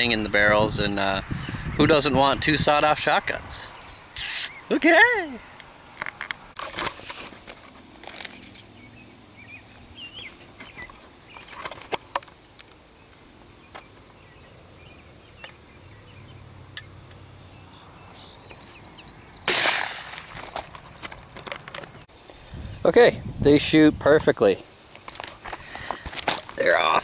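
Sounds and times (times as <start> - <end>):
shotgun blast with echo: 19.5 - 20.3.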